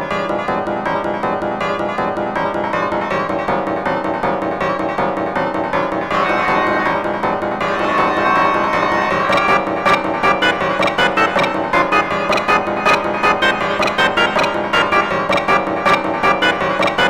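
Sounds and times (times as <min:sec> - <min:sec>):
stuttering keyboard chord: 0:06.0 - 0:17.0.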